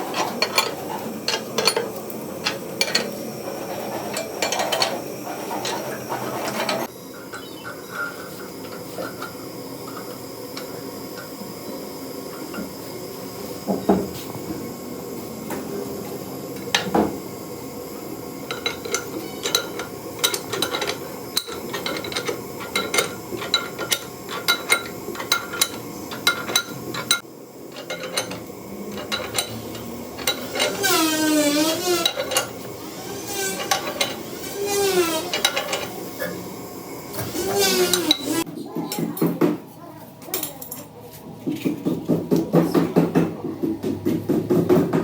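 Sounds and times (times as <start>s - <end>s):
metal tools clinking on metal: 0.1s - 3.2s, 18.5s - 32.6s, 33.3s - 36.0s.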